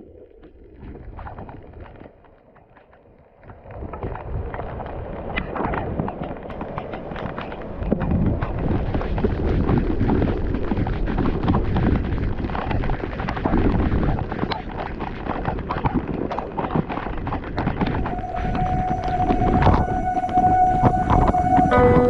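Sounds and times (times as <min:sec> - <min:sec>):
wind buffeting microphone: 0:03.3 - 0:22.0
music: 0:17.9 - 0:22.0.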